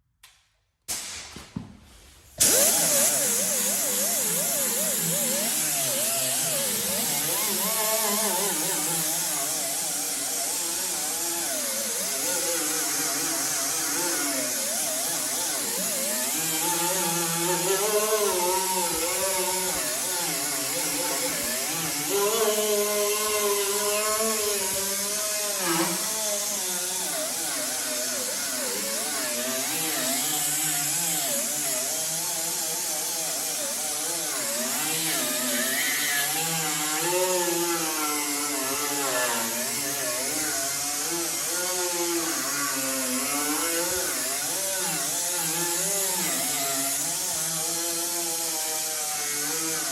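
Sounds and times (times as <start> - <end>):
cut-off tool whining on sheet metal: 2.4 - 49.9.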